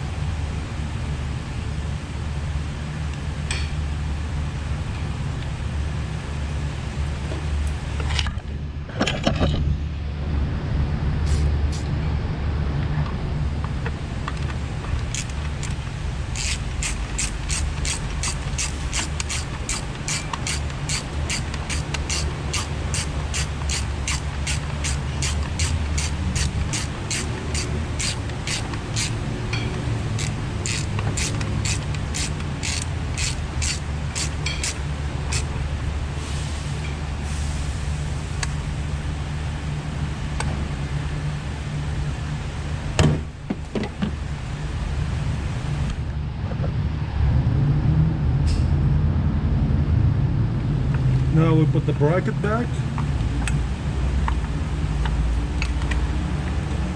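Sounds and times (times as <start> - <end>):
steady low hum: 0.0 - 56.9
ratchet wrench clicking: 15.0 - 35.6.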